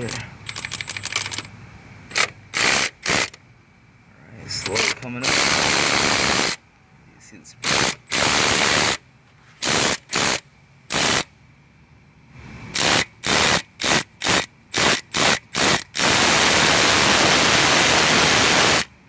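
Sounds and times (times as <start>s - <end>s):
air ratchet bursts: 2.1s - 3.4s, 4.5s - 6.6s, 7.6s - 9.0s, 9.6s - 11.3s, 12.6s - 18.9s
exhaust air hissing: 4.4s - 6.6s, 7.6s - 11.4s, 12.2s - 18.9s.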